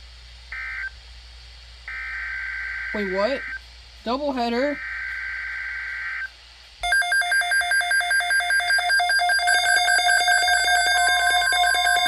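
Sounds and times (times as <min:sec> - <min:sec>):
harsh buzzing data tone: 0:04.7 - 0:12.0
pulsing electronic alert alarm: 0:06.8 - 0:12.0.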